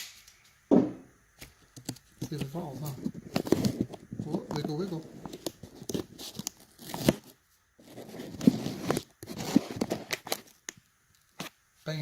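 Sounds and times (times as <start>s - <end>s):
tape pulled off roll and torn: 3.3s - 11.6s.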